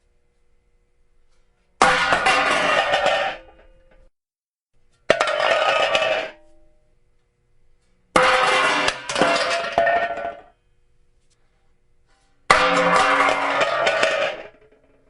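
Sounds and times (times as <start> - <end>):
metal pots and pans clattering: 1.8 - 3.8, 5.1 - 6.5, 8.2 - 10.5, 12.5 - 14.8.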